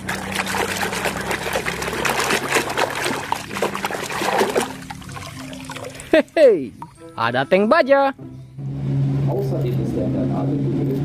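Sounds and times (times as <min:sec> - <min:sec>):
water pouring and splashing: 0:00.0 - 0:06.4.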